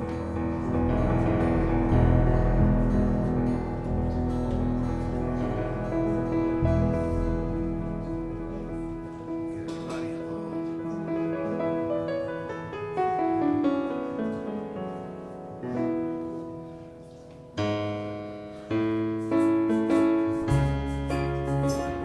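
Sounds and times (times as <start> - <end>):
slow piano music: 0.0 - 22.0.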